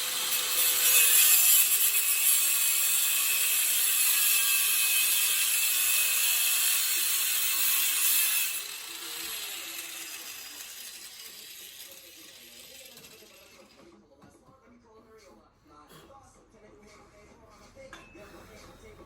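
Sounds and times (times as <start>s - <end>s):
angle grinder cutting metal: 0.0s - 13.7s.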